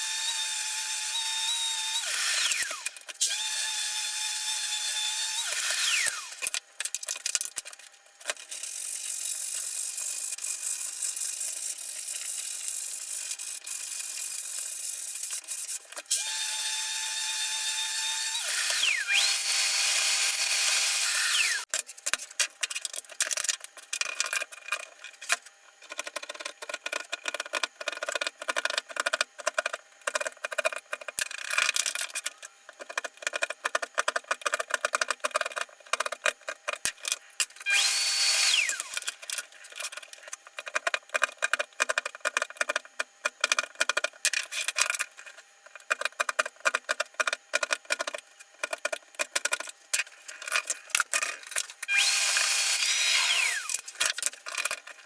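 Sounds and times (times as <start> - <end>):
power tool motor whine: 0.0 - 6.4, 16.1 - 21.7, 37.6 - 39.1, 51.8 - 53.9.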